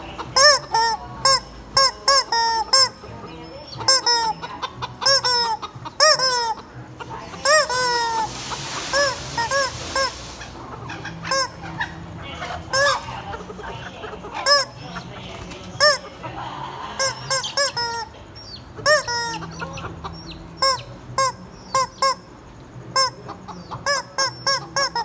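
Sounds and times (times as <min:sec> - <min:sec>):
rubber chicken squeak toy: 0:00.2 - 0:03.1, 0:03.7 - 0:06.7, 0:07.4 - 0:13.2, 0:14.4 - 0:14.8, 0:15.8 - 0:16.1, 0:17.0 - 0:22.3, 0:22.9 - 0:25.0.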